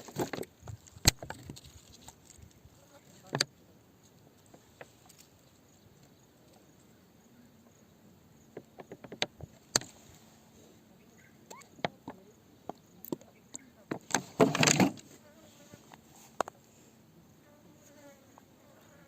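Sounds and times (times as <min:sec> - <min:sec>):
hard objects clicking and knocking: 0:08.5 - 0:09.9.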